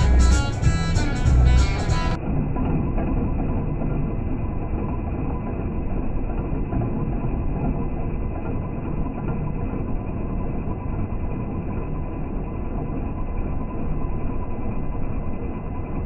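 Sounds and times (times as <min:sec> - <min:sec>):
milling machine running: 0:00.0 - 0:02.2.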